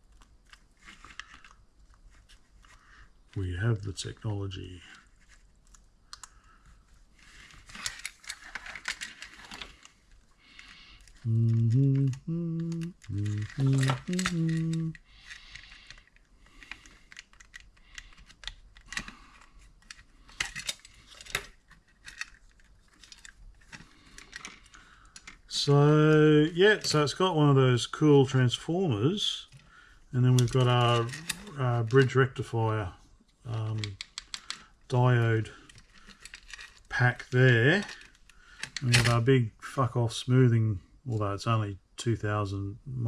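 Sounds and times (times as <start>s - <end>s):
hands working on wires: 0.0s - 3.5s, 4.9s - 27.1s, 29.5s - 32.2s, 33.2s - 34.8s, 35.6s - 39.2s
man humming a tune: 11.2s - 15.0s.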